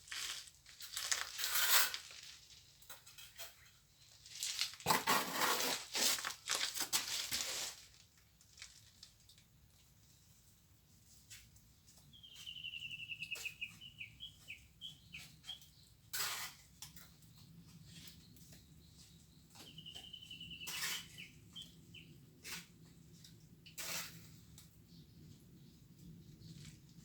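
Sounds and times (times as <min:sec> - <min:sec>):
sharp knocks or scrapes: 0:04.7 - 0:07.7, 0:16.1 - 0:16.7, 0:19.6 - 0:21.4
small bird chirping: 0:11.7 - 0:16.1, 0:17.0 - 0:22.3.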